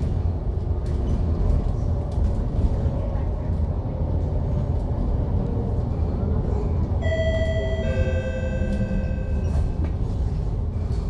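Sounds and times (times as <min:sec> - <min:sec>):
bus engine rumble: 0:00.0 - 0:11.0
two-note chime: 0:07.0 - 0:09.5.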